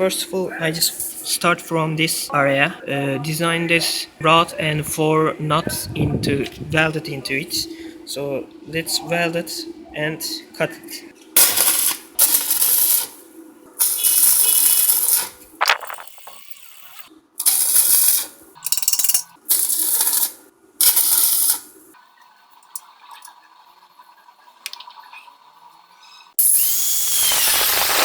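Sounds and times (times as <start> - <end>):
arc welder crackling: 11.4 - 22.0, 26.4 - 28.0.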